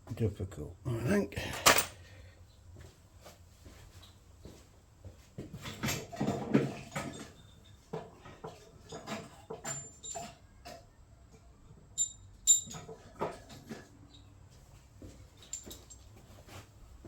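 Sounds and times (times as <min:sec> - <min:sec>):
metal tools knocking and rattling: 0:01.5 - 0:02.0, 0:05.6 - 0:10.9, 0:12.0 - 0:14.3, 0:15.4 - 0:16.1
ringing metallic clinks: 0:12.0 - 0:12.9.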